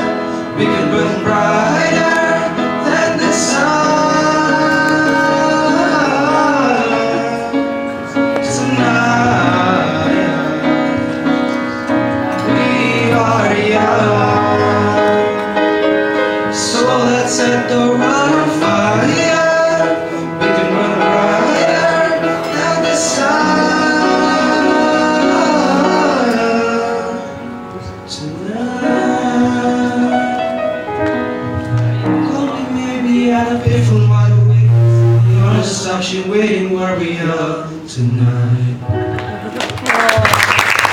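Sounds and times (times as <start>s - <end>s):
men singing pop songs: 0.0s - 7.6s, 8.4s - 11.2s, 12.3s - 15.5s, 16.5s - 27.2s
musical accompaniment: 0.0s - 40.9s.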